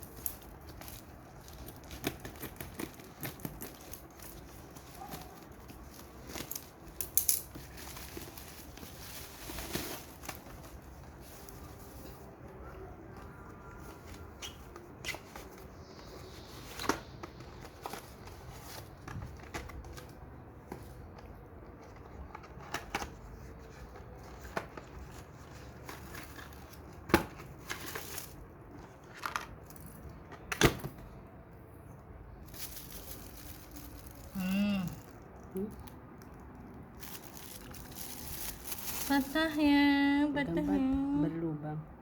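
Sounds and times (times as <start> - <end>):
packaging crinkling and tearing: 0.0 - 11.8, 32.4 - 39.6.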